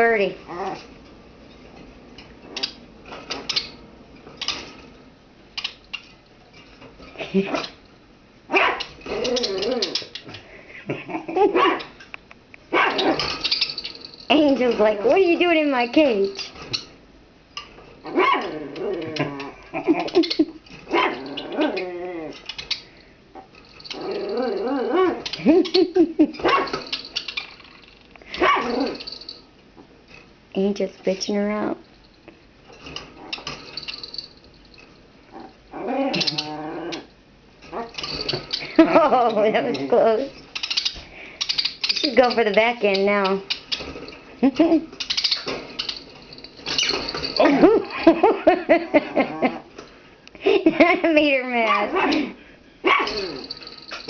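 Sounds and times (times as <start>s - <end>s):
puppy barking and growling: 0.5s - 0.9s, 8.5s - 10.1s, 11.1s - 12.0s, 12.7s - 13.3s, 18.0s - 20.2s, 20.8s - 22.4s, 23.4s - 25.4s, 26.4s - 26.9s, 28.3s - 29.1s, 37.7s - 38.1s, 51.6s - 54.0s.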